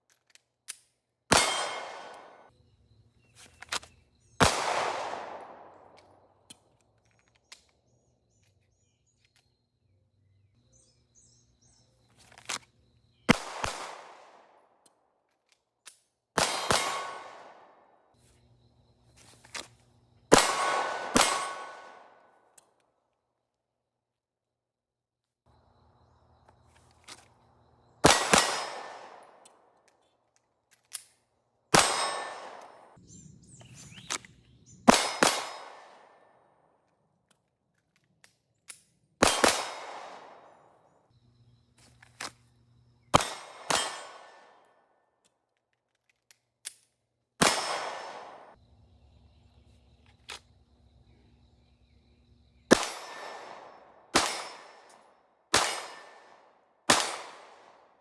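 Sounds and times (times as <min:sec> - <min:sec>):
gunshots with echo: 0:01.3 - 0:02.5, 0:04.4 - 0:05.8, 0:16.4 - 0:17.8, 0:20.3 - 0:22.2, 0:28.0 - 0:29.3, 0:31.8 - 0:33.0, 0:34.8 - 0:36.0, 0:47.4 - 0:48.6, 0:55.5 - 0:56.3.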